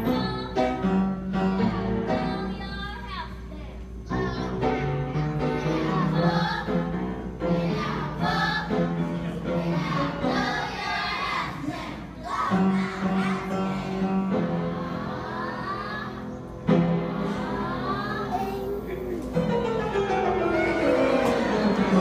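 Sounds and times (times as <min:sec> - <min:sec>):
piano accompaniment: 0:00.0 - 0:03.0, 0:03.9 - 0:22.0
children singing: 0:07.4 - 0:19.0, 0:20.2 - 0:22.0.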